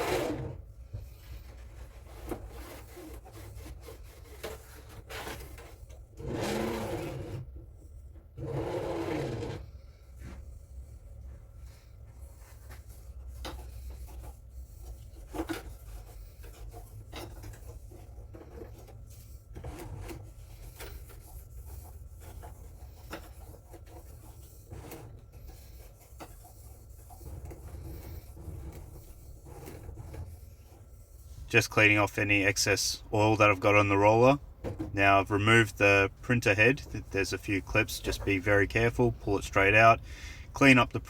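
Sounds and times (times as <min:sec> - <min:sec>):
low steady hum: 0:09.5 - 0:41.0.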